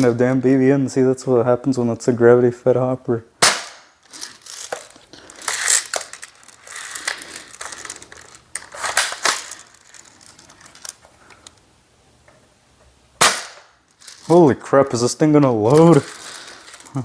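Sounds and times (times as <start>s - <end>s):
plastic toy gun clicking and rattling: 3.4s - 11.6s, 13.2s - 14.5s, 15.6s - 17.0s.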